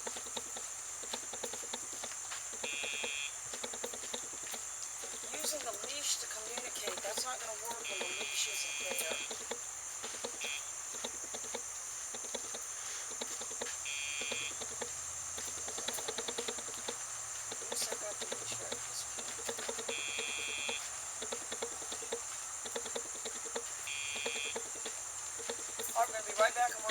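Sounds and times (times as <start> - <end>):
high insect drone: 0.0 - 26.9
light ticking: 0.0 - 26.9
short electronic beeps: 2.6 - 3.4, 7.7 - 9.5, 10.3 - 10.7, 13.8 - 14.7, 19.9 - 20.9, 23.8 - 24.7.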